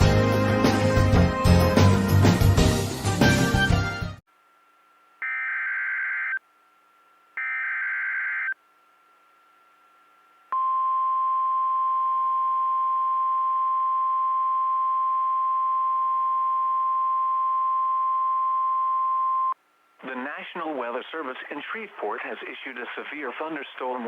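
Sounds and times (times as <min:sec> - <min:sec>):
steady alarm tone: 0:05.2 - 0:06.4, 0:07.4 - 0:08.6.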